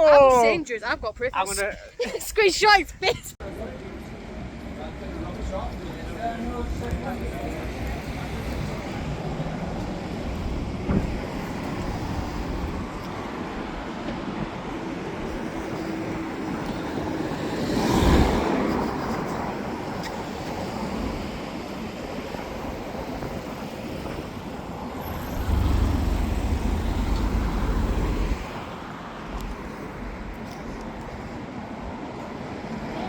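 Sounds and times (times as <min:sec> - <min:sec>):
low traffic rumble: 0:00.0 - 0:33.0
vehicle passing close: 0:25.0 - 0:28.7.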